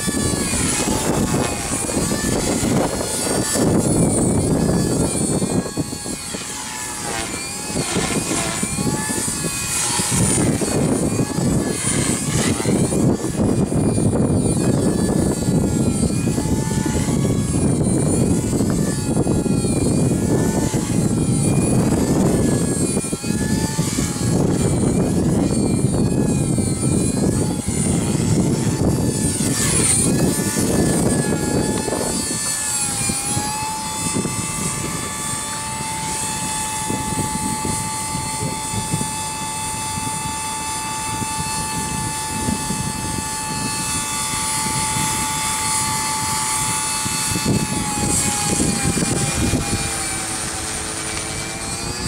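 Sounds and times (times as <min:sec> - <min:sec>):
rc helicopter rotors whining: 0:00.0 - 0:52.0
wind rushing on microphone: 0:00.0 - 0:52.0.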